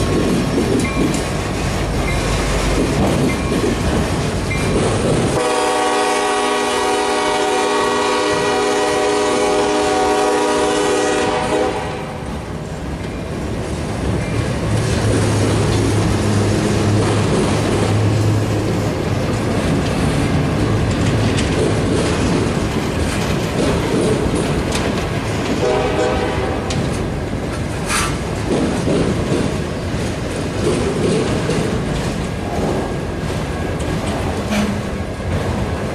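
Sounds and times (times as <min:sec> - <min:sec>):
locomotive engine rumbling: 0:00.0 - 0:35.9
rail cars clattering over joints: 0:00.0 - 0:35.9
locomotive air horn: 0:05.4 - 0:12.2, 0:25.6 - 0:26.8.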